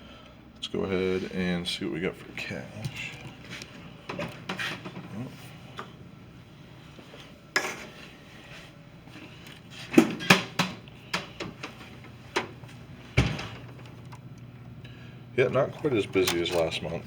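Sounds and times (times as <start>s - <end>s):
metal clicks and clunks: 15.6s - 17.0s.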